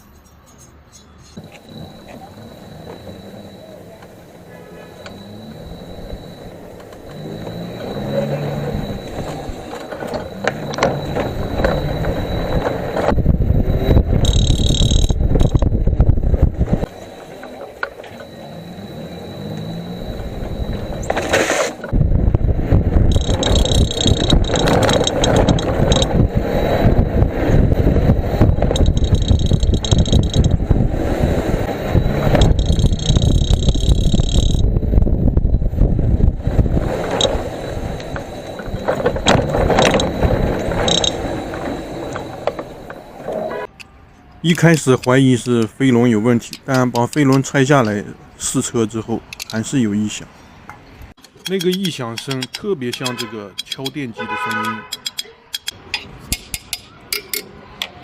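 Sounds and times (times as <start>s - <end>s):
brief high tone: 1.6s - 14.1s, 37.0s - 44.4s
hub motor rattling and knocking: 6.8s - 18.3s, 21.8s - 31.0s, 31.9s - 43.2s.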